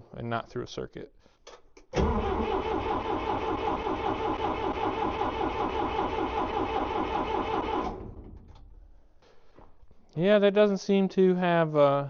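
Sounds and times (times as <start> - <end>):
starter cranking engine: 2.0 - 8.6.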